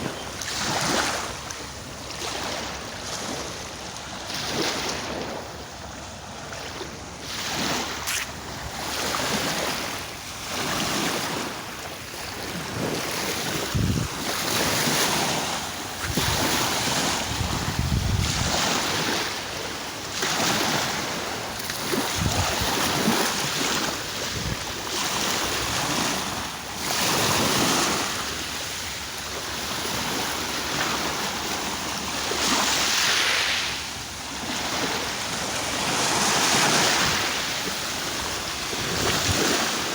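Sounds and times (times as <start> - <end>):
sea waves washing in: 0.0 - 39.9
wind buffeting microphone: 12.4 - 19.3, 21.2 - 23.2, 23.8 - 24.9.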